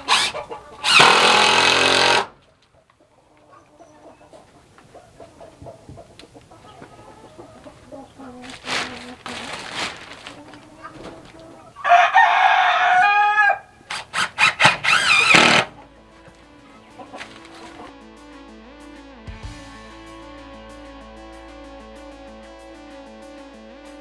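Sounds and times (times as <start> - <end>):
chicken squawks: 0.0 - 1.0, 3.4 - 15.4
chickens clucking: 0.0 - 17.9
rooster crowing: 11.8 - 13.9.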